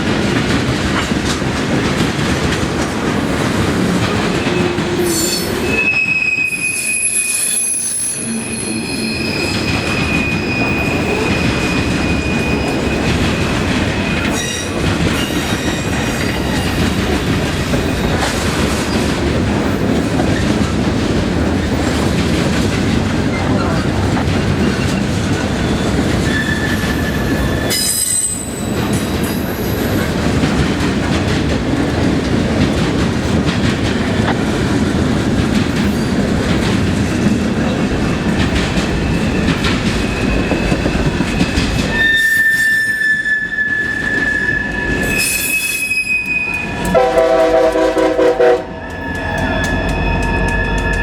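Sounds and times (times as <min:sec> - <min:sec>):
train wheels rumbling on rail: 0:00.0 - 0:51.0
high-pitched wheel squeals: 0:04.5 - 0:13.1, 0:25.7 - 0:28.6, 0:41.8 - 0:47.0, 0:48.7 - 0:51.0
locomotive air horn blast: 0:46.9 - 0:48.8.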